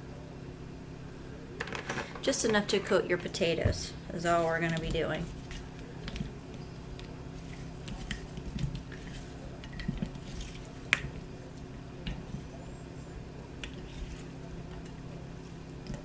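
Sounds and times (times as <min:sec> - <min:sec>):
steady low hum: 0:00.0 - 0:16.0
potato slices squishing in bowl: 0:04.1 - 0:16.0.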